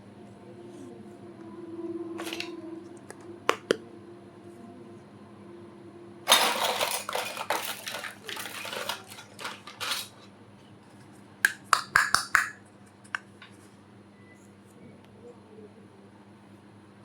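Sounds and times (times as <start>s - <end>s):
toy dishes scraping and rustling: 2.2s - 2.5s, 6.3s - 10.3s
toy dishes clacking and clinking: 6.3s - 10.2s, 11.5s - 12.6s.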